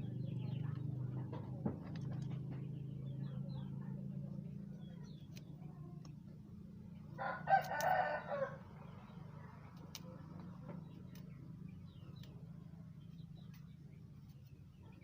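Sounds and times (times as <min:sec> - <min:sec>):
steady low hum: 0:00.0 - 0:15.0
rooster crowing: 0:07.2 - 0:08.6.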